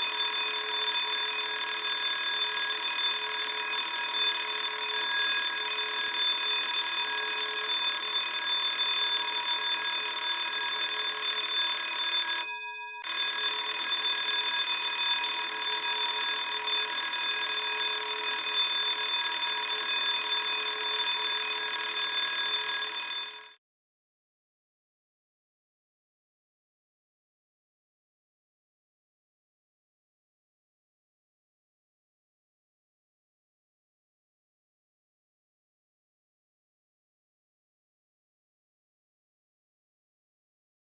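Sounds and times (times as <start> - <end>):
school bell ringing: 0.0 - 23.6.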